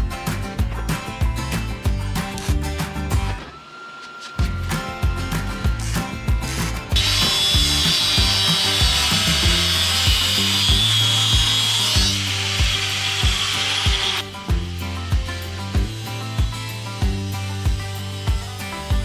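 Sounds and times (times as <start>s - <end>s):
background music with beat: 0.0s - 3.5s, 4.4s - 19.0s
angle grinder cutting steel: 4.0s - 19.0s.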